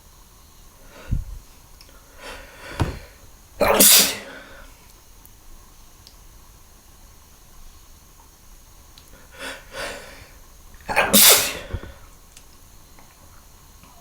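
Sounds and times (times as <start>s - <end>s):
person sneezing loudly: 2.2s - 4.6s, 9.4s - 12.0s.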